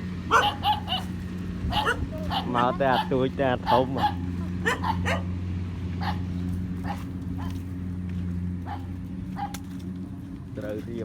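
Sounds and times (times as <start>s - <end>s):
low engine hum: 0.0s - 11.0s
dog barking and yelping: 0.2s - 5.3s, 6.0s - 7.6s, 8.6s - 9.6s.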